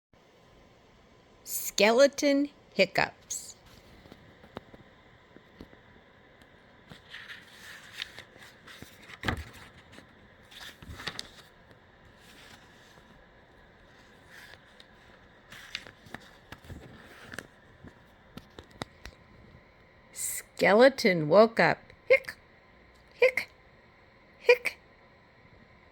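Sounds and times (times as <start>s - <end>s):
paper book pages turning: 6.8s - 19.2s.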